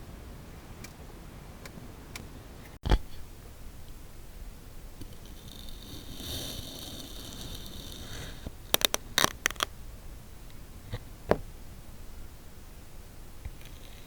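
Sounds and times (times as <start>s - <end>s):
sand scraping hiss: 5.1s - 8.5s.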